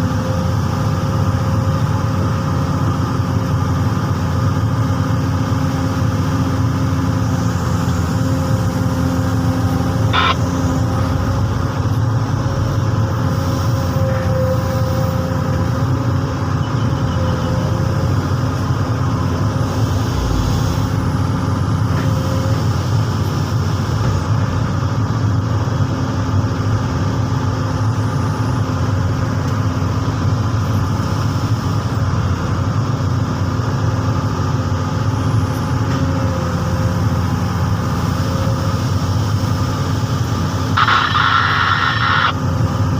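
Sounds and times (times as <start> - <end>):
excavator diesel engine running: 0.0 - 42.9
brief sharp sound: 40.8 - 42.4.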